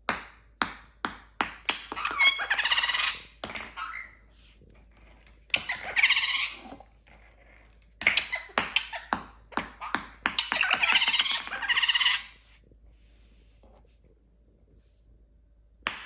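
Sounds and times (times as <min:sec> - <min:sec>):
ping-pong balls tapping: 0:00.0 - 0:04.0, 0:08.0 - 0:11.9
parakeet squealing call: 0:02.0 - 0:04.2, 0:05.5 - 0:06.7, 0:09.8 - 0:12.4.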